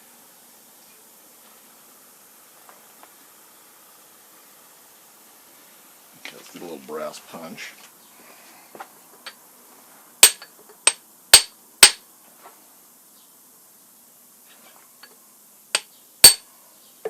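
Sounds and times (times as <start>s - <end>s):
hammer striking metal punch: 10.2s - 12.0s, 16.2s - 16.4s.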